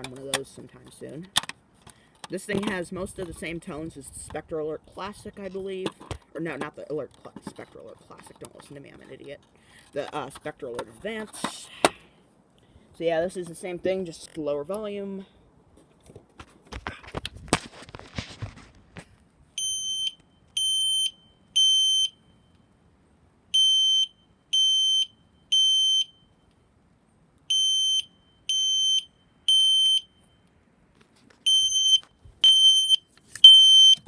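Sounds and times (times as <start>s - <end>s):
handling rustle: 15.7s - 19.3s, 30.9s - 32.4s
fire alarm horn beeps: 19.6s - 22.5s, 23.6s - 26.4s, 27.5s - 30.5s, 31.5s - 34.0s.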